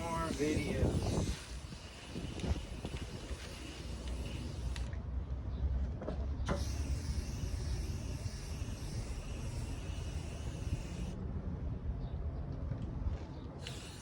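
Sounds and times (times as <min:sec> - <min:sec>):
aerosol can spraying: 0:00.0 - 0:04.9, 0:06.5 - 0:11.2, 0:13.6 - 0:14.0.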